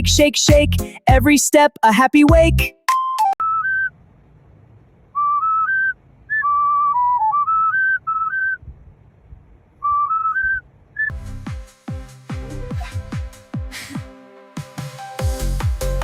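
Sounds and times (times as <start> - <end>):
whistle-like melody: 2.9 - 3.7.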